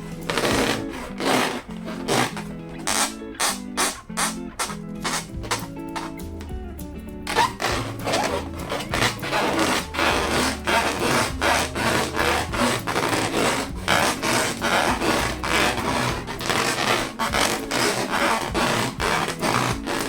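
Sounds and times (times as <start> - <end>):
balloons being rubbed: 0.0 - 6.4, 7.3 - 20.0.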